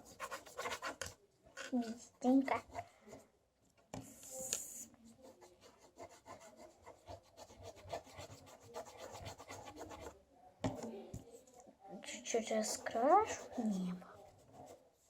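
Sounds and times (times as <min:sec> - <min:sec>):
paintbrush scrubbing on paper: 0:00.0 - 0:01.0, 0:05.1 - 0:10.2, 0:12.4 - 0:15.0.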